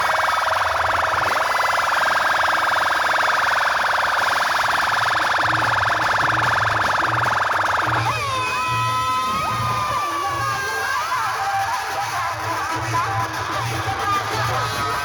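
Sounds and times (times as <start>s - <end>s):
electronic siren buzz: 0.0s - 15.0s.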